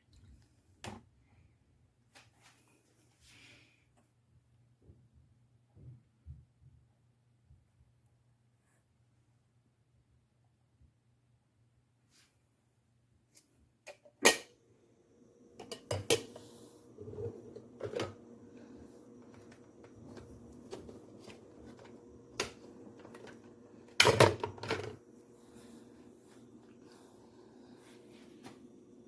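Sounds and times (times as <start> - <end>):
faint hum: 14.4 - 29.0.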